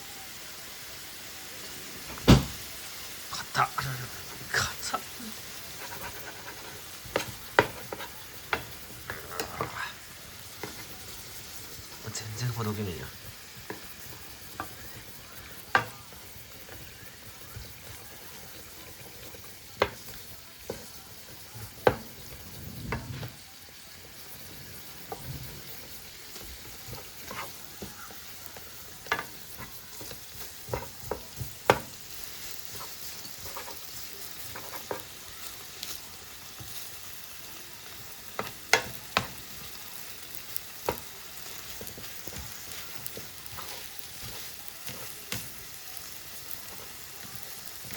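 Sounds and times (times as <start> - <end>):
noodles sizzling in a pan: 0.0 - 47.9
utensil scraping a pan: 5.6 - 9.8, 24.8 - 28.3, 29.0 - 35.2.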